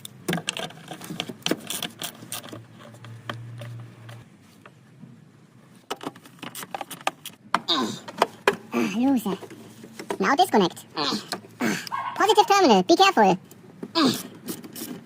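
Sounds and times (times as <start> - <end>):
hand tools and metal parts rattling: 0.0 - 4.2.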